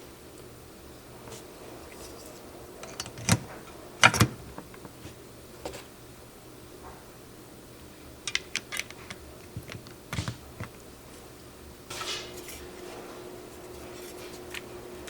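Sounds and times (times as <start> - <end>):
keyboard parts clicking: 2.8 - 5.0, 8.2 - 10.8
scraping rustle: 11.9 - 15.0.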